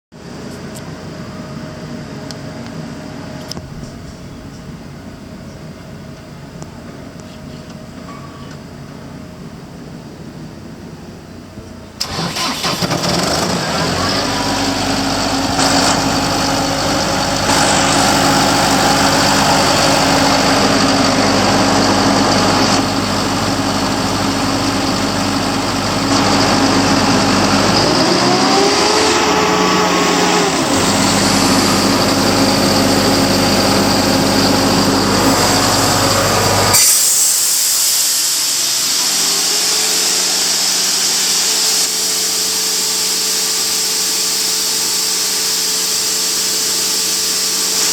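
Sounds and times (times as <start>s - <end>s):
air compressor diesel engine running: 8.7s - 47.9s
hiss: 12.0s - 21.9s, 22.6s - 26.2s, 28.6s - 47.9s
rising whine: 12.0s - 47.9s.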